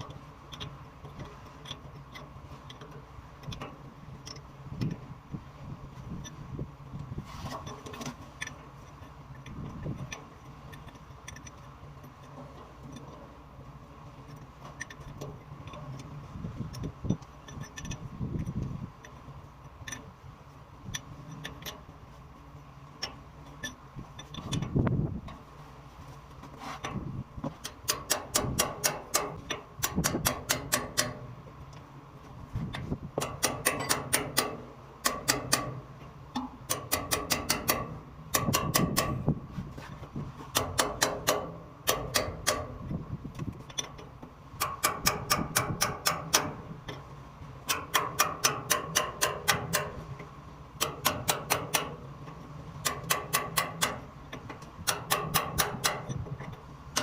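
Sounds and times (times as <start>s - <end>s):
rapid metallic clicks: 27.6s - 31.3s, 32.7s - 39.3s, 40.5s - 47.0s, 47.6s - 57.0s.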